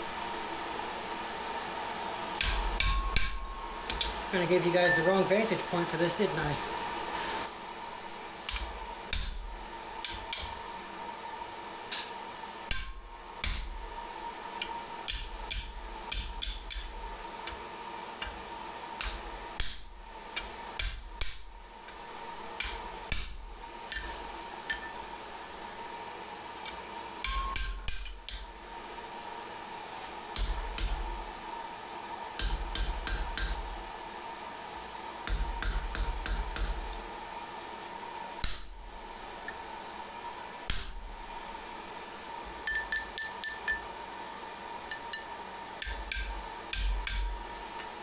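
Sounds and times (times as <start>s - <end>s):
hammer striking steel on anvil: 2.4s - 4.2s, 23.9s - 25.2s, 27.2s - 28.5s, 30.4s - 31.1s, 32.4s - 33.7s, 35.3s - 36.8s, 42.6s - 43.9s, 44.9s - 47.4s.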